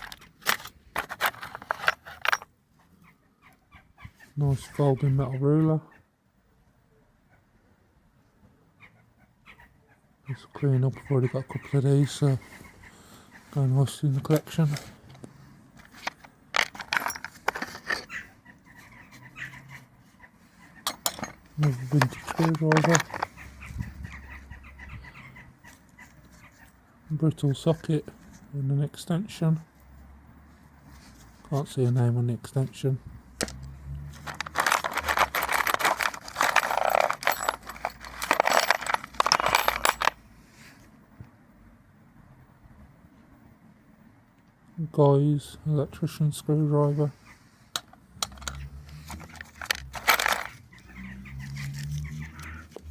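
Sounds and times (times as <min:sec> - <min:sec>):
metal tools clicking and knocking: 0:00.0 - 0:02.5, 0:14.3 - 0:18.2, 0:20.8 - 0:23.4, 0:33.4 - 0:40.2, 0:47.8 - 0:50.8.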